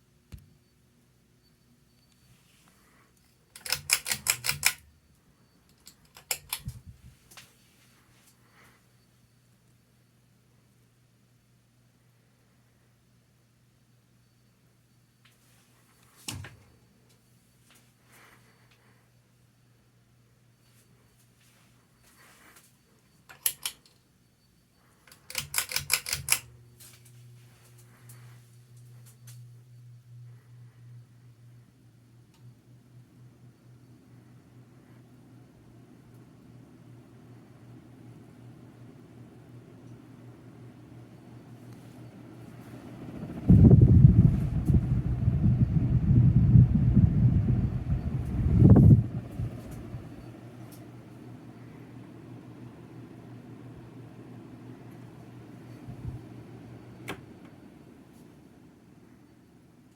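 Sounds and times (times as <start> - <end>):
ceiling fan motor humming: 0.0 - 9.4, 24.5 - 59.9
pull chain clicks and rattles: 3.6 - 4.8, 5.7 - 6.8, 23.3 - 23.9, 25.1 - 26.5.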